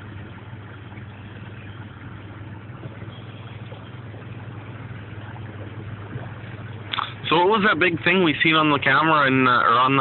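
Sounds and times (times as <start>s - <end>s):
vehicle engine hum: 0.0s - 10.0s
water wash and tyre noise: 0.0s - 10.0s.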